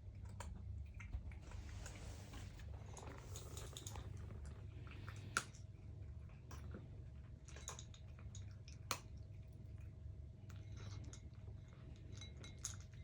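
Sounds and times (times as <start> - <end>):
cats chewing food: 0.0 - 13.0.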